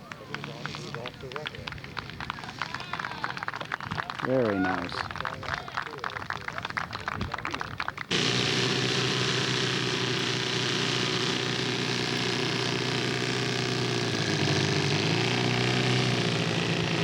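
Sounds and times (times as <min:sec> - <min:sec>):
model airplane engine running: 0:08.1 - 0:17.0.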